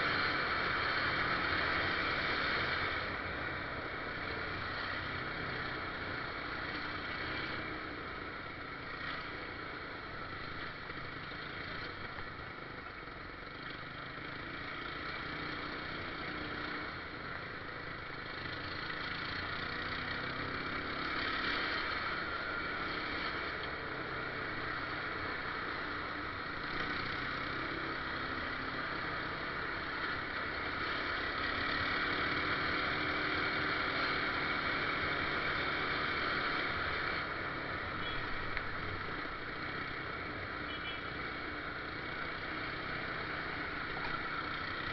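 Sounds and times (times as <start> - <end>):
vehicle engine and rolling noise: 0.0 - 44.9.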